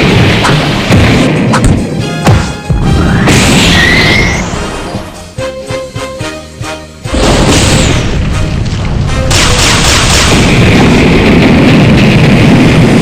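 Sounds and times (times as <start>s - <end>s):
explosion boom and rumble: 0.0s - 4.9s, 7.1s - 13.0s
music: 0.4s - 10.0s.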